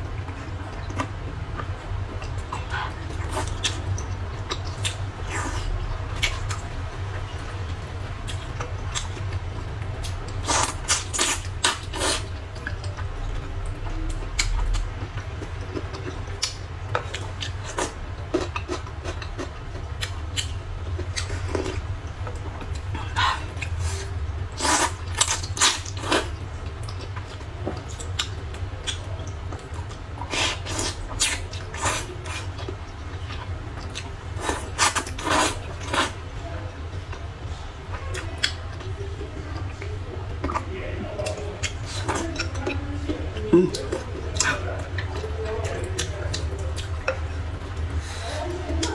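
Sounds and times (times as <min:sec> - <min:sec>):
steady low hum: 0:00.0 - 0:48.9
person slurping noodles: 0:34.4 - 0:36.2.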